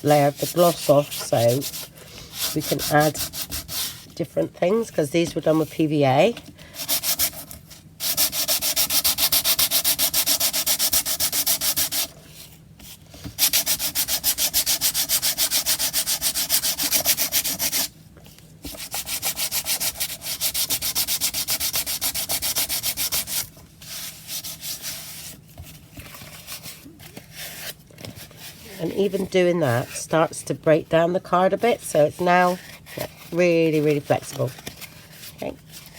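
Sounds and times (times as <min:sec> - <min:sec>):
hand sanding card: 0:00.1 - 0:04.1, 0:06.8 - 0:12.1, 0:13.3 - 0:17.9, 0:18.6 - 0:29.3.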